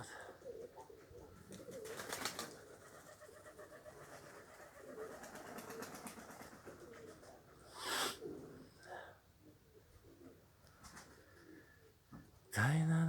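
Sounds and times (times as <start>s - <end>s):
pigeons cooing: 0.0s - 12.0s
wings fluttering: 0.6s - 7.5s.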